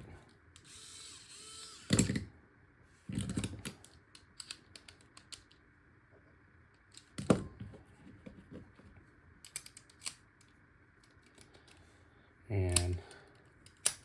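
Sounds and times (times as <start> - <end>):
padlock parts clicking and clacking: 9.5 - 10.2, 12.7 - 14.0.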